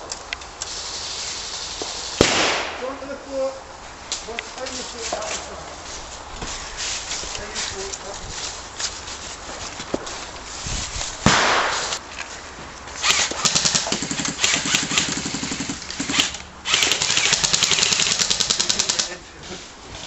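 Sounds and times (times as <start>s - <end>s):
airsoft guns firing full auto: 2.2s - 2.8s, 11.2s - 12.0s, 13.0s - 19.2s.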